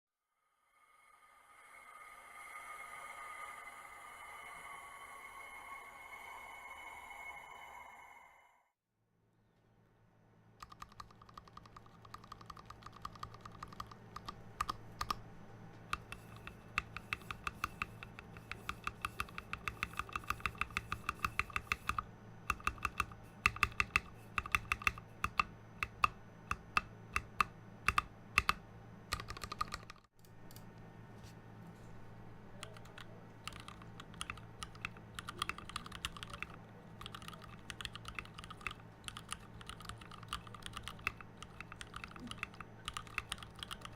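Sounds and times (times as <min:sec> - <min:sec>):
fast typing on mechanical keyboard: 0:10.6 - 0:15.2, 0:15.9 - 0:30.1, 0:32.6 - 0:43.9.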